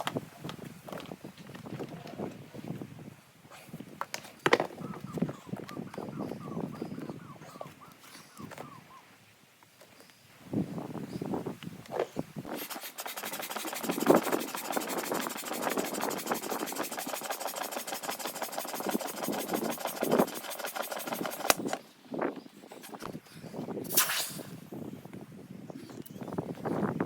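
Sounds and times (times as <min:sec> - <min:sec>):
electric air pump buzzing: 0:12.5 - 0:21.8
air hiss: 0:23.8 - 0:24.8.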